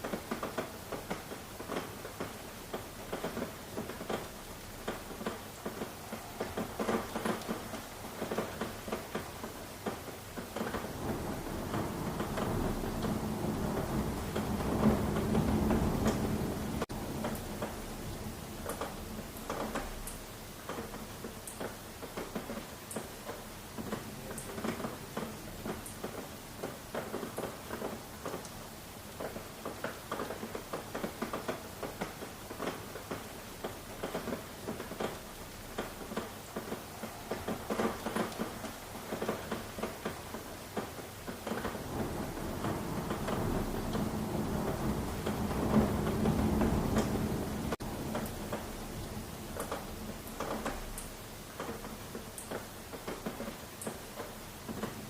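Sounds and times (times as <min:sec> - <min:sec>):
rain drops tapping: 0:00.0 - 0:55.0
low thunder rumble: 0:10.4 - 0:19.6, 0:41.3 - 0:51.2.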